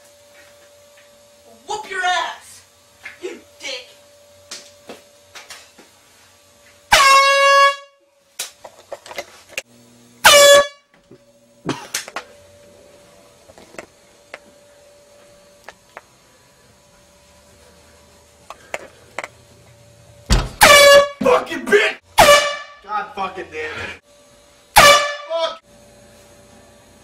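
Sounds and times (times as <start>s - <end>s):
air horn blasts: 6.9s - 8.1s, 10.2s - 10.9s, 20.6s - 21.4s, 22.2s - 22.9s, 24.7s - 25.6s.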